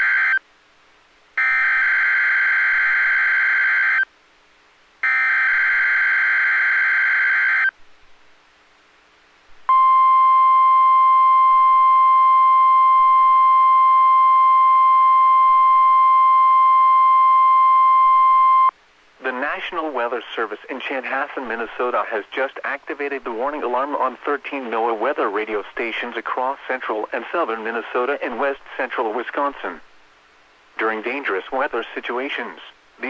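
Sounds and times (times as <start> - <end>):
steady warning alarm tone: 1.4 - 4.0, 5.0 - 7.7.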